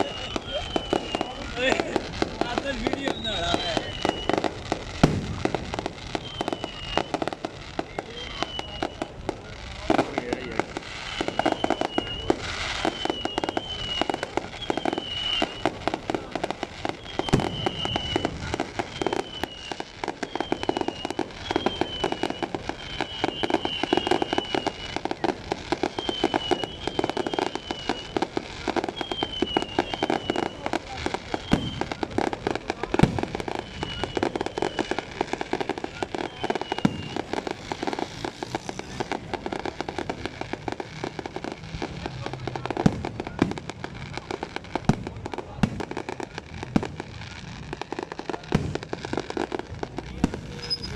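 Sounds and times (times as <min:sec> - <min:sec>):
falling whistles: 0:00.0 - 0:01.6, 0:02.8 - 0:04.6, 0:06.0 - 0:07.3, 0:08.1 - 0:09.2, 0:10.9 - 0:16.0, 0:16.8 - 0:25.2, 0:25.8 - 0:32.0, 0:33.1 - 0:39.7, 0:50.5 - 0:50.9
fireworks crackling and banging: 0:00.0 - 0:50.9.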